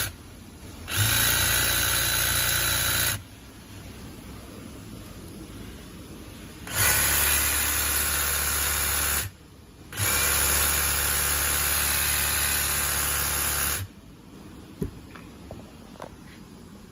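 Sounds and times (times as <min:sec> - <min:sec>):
hedge trimmer running: 0:00.9 - 0:03.2, 0:06.7 - 0:09.3, 0:09.9 - 0:13.9.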